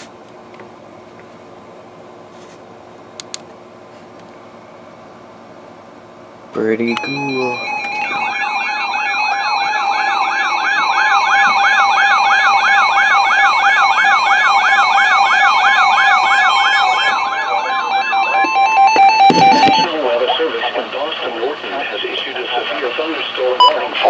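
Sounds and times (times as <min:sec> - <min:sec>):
electronic siren tone warbling: 0:06.8 - 0:19.9
steady pulsed tone: 0:06.8 - 0:19.9.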